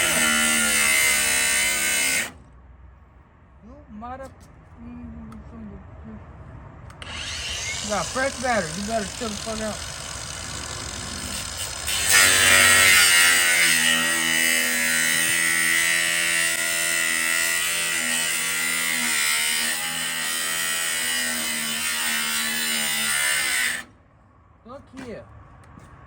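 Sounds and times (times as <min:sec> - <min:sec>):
power tool motor whine: 0:00.0 - 0:02.4, 0:07.0 - 0:16.8.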